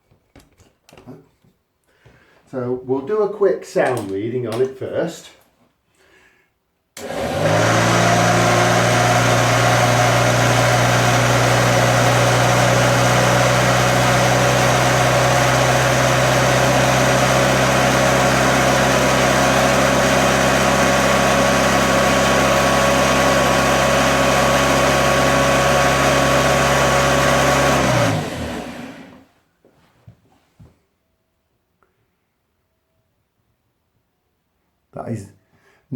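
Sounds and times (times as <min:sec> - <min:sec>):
vacuum cleaner motor running: 0:07.0 - 0:29.3.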